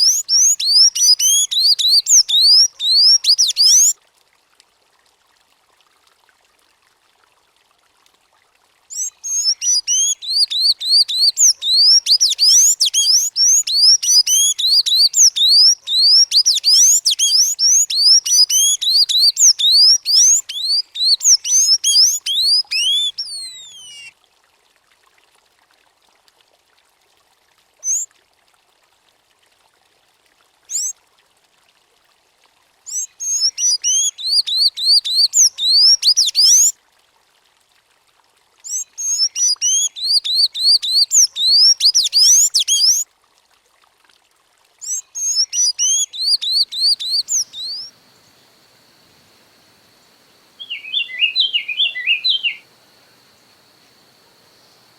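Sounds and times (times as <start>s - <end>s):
bird singing squeaky notes: 45.2s - 47.9s, 50.6s - 52.6s.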